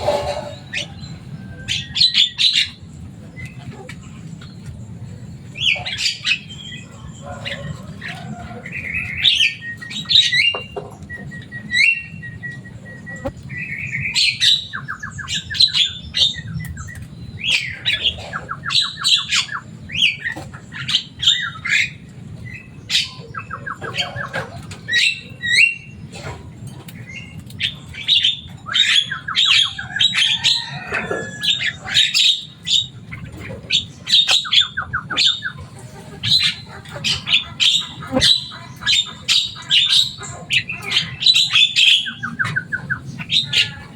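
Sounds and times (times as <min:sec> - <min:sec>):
myna calling: 0:33.8 - 0:43.9.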